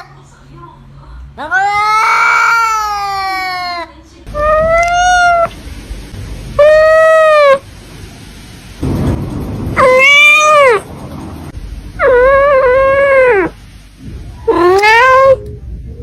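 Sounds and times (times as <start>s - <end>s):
kitten meowing loudly: 1.5s - 3.8s, 4.4s - 5.5s, 6.6s - 7.6s, 9.8s - 10.8s, 12.0s - 13.5s, 14.5s - 15.4s
low bump: 5.5s - 14.5s.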